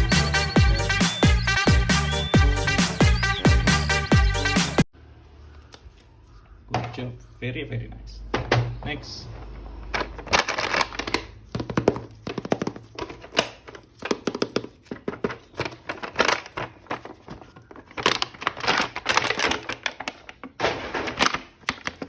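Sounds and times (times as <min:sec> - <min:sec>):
plastic packaging clicks and rustling: 0:09.8 - 0:22.0.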